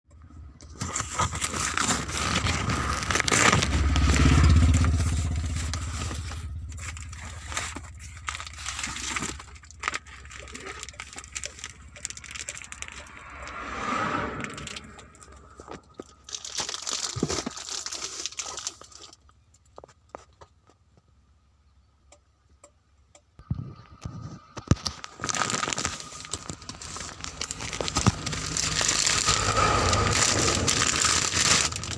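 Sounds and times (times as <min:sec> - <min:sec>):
packaging crackling and scraping: 0:00.6 - 0:13.7, 0:14.3 - 0:20.8, 0:24.0 - 0:31.9
low rumble: 0:01.7 - 0:17.4, 0:25.3 - 0:31.9.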